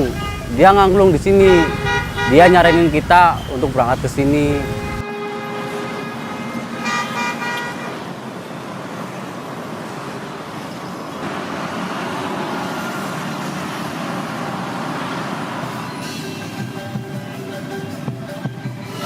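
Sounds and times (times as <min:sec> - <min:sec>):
vehicle horn honks: 0:00.0 - 0:08.1
road traffic: 0:00.0 - 0:19.0.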